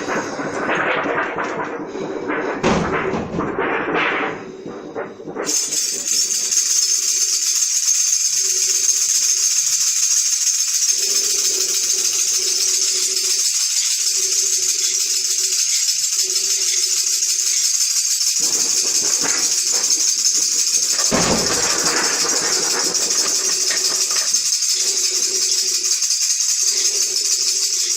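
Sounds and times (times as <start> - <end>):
shaken tambourines hissing: 0.0 - 0.9, 4.6 - 27.9
deep crash: 0.0 - 5.9.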